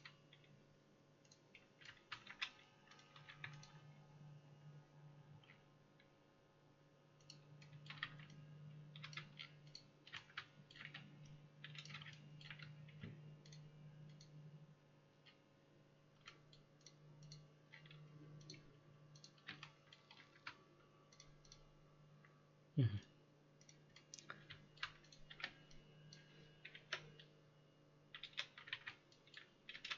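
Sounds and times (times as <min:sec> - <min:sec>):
low steady hum: 0:00.0 - 0:29.9
mouse and keyboard clicking: 0:09.0 - 0:14.4, 0:16.2 - 0:21.7.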